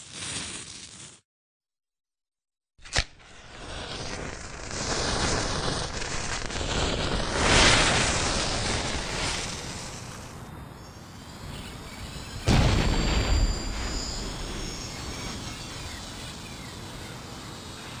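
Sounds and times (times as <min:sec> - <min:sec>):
rushing sound effect: 0:11.0 - 0:17.8.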